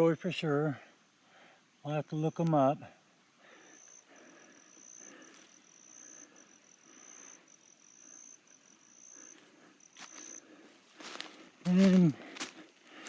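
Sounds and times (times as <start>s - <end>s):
insect trilling: 3.6s - 12.5s
footsteps in dry leaves: 10.0s - 13.0s.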